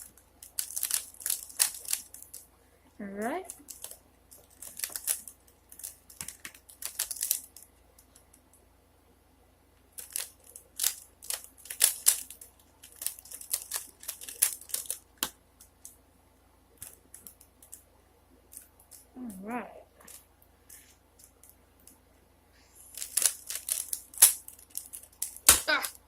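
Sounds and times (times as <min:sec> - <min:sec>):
plastic puzzle cube clicking: 0:00.5 - 0:02.4, 0:10.0 - 0:15.3, 0:23.0 - 0:25.5.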